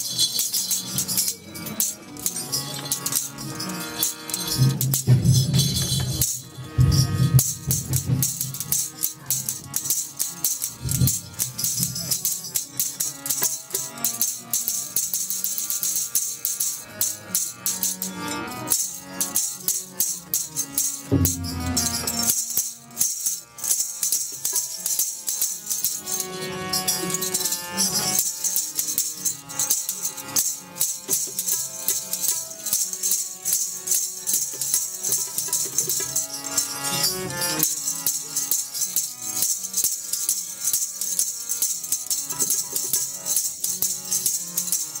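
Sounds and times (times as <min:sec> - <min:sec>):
jingling rattling percussion: 0:00.0 - 0:45.0
music with melody: 0:00.0 - 0:45.0.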